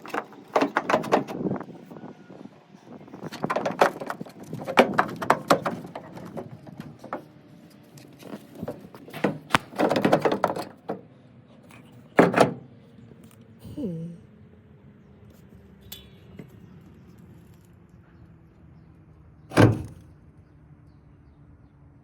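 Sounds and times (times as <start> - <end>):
metal hinge clanking and rattling: 3.2 - 7.3, 8.2 - 11.1, 11.7 - 12.7, 19.5 - 20.0.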